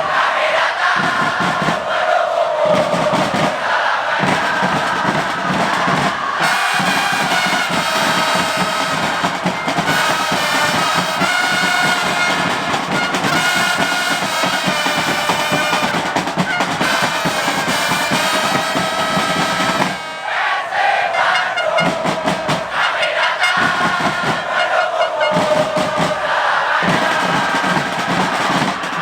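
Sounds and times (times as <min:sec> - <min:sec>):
drums beating fast: 0:00.0 - 0:20.2, 0:21.1 - 0:29.0
stadium crowd chanting: 0:00.0 - 0:29.0
trumpets playing a tune: 0:06.4 - 0:23.9, 0:24.5 - 0:25.6.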